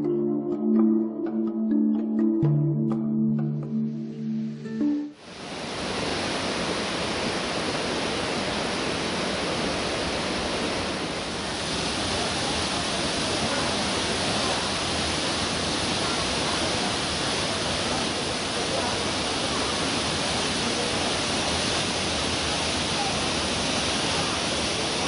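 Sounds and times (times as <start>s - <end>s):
waterfall rushing: 5.1s - 25.0s.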